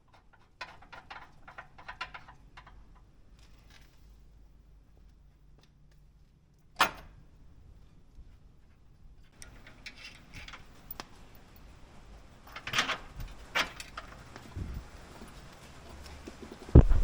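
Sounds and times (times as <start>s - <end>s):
handling clicks and clinks: 9.2s - 16.7s.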